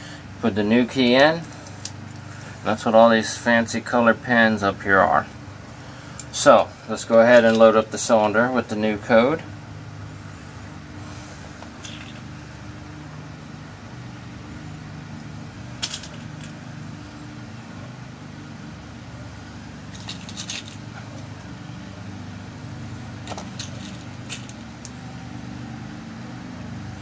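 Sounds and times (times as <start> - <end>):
steady low hum: 0.0 - 27.0
lock pins clicking: 23.2 - 25.0.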